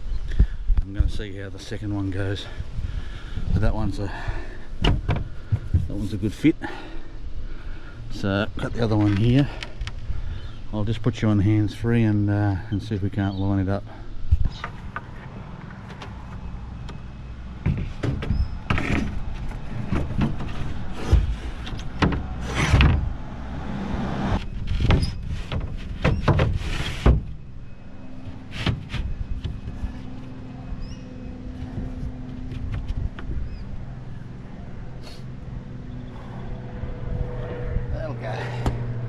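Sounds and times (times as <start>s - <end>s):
wooden panel knocks and thumps: 4.8s - 5.9s, 17.6s - 23.2s, 24.7s - 27.4s
panel scraping slides: 18.7s - 23.1s.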